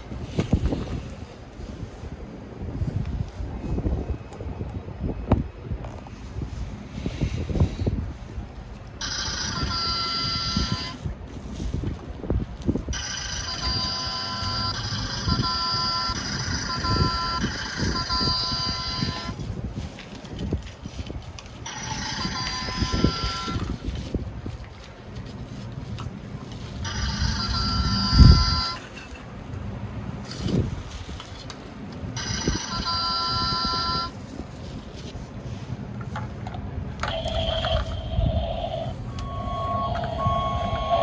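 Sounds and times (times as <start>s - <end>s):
toy electronic sound effect: 9.0s - 11.0s, 13.0s - 19.4s, 21.7s - 23.7s, 26.8s - 28.8s, 32.2s - 34.1s, 37.1s - 41.0s
plastic toy trucks rumbling: 36.0s - 38.7s
higher steady tone: 37.1s - 41.0s.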